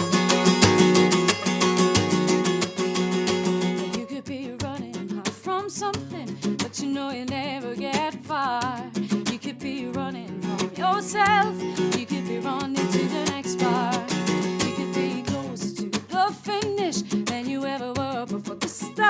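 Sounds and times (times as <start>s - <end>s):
strummed acoustic guitar: 0.0s - 19.0s
person singing wordless line: 9.4s - 17.6s.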